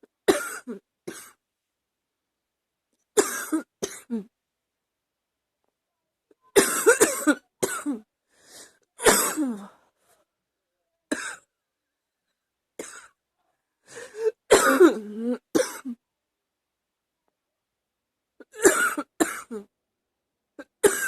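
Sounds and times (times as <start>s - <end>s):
woman coughing: 0.2s - 1.4s, 3.2s - 4.3s, 6.6s - 8.1s, 9.0s - 9.7s, 11.1s - 11.5s, 14.2s - 16.0s, 18.4s - 19.7s, 20.6s - 21.0s.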